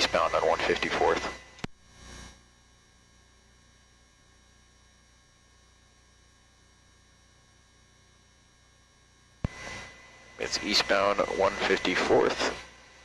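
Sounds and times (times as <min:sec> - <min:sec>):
faint electrical hum: 0:00.0 - 0:13.0.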